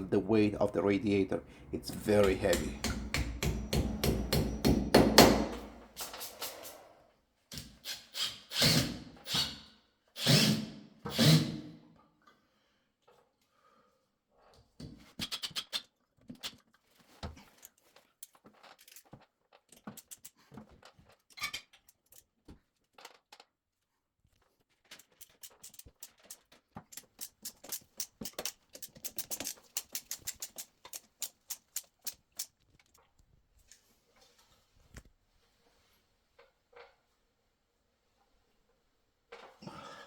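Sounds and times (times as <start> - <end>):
hand tool clicks and knocks: 1.7 - 6.5, 25.1 - 32.6
fast sharp clicks: 25.3 - 32.5.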